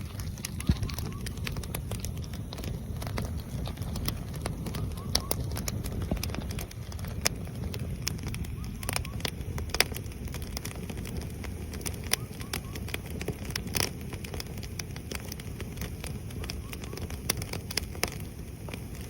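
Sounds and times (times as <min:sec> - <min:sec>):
firewood crackling and popping: 0:00.0 - 0:19.0
low rumble of flames: 0:00.0 - 0:19.0.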